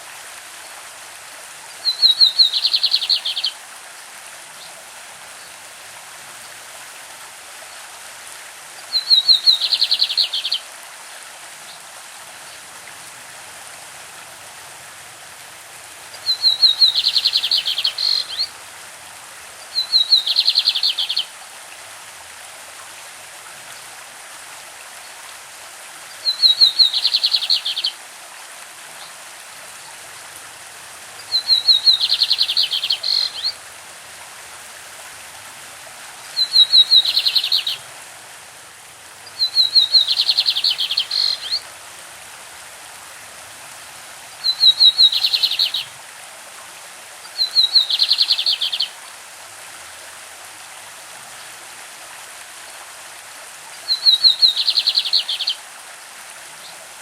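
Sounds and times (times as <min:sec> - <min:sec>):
stream rushing: 0:00.0 - 0:57.0
bird singing rapid notes: 0:16.2 - 0:18.5, 0:31.3 - 0:33.5, 0:36.4 - 0:37.8, 0:39.3 - 0:41.6, 0:44.4 - 0:45.9.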